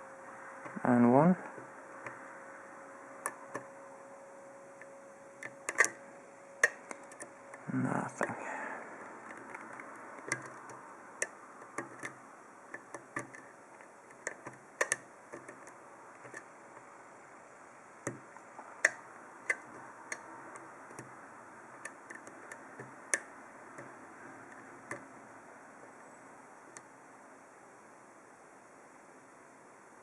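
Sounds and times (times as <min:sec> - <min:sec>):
lock pick clicking in lock: 0:04.8 - 0:06.0, 0:06.6 - 0:07.6, 0:09.2 - 0:16.5, 0:18.0 - 0:21.2, 0:21.8 - 0:25.1.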